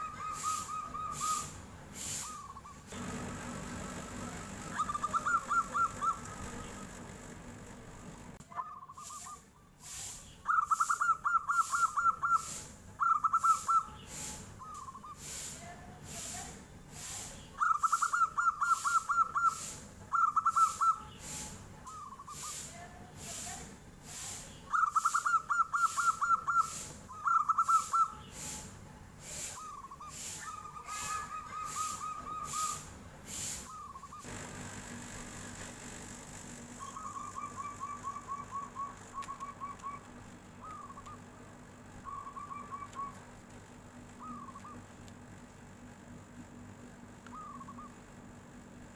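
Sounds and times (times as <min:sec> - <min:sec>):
dove cooing song: 0:00.0 - 0:01.6, 0:04.5 - 0:07.4, 0:10.5 - 0:15.2, 0:17.6 - 0:21.2, 0:24.7 - 0:28.4, 0:29.5 - 0:32.9, 0:36.8 - 0:41.4, 0:42.0 - 0:43.2, 0:44.1 - 0:44.9, 0:47.3 - 0:48.0.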